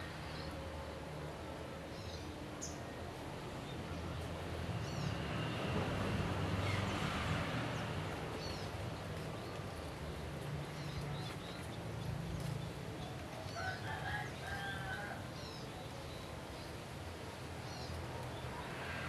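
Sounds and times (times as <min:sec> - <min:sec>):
rooster crowing: 0:13.6 - 0:15.2.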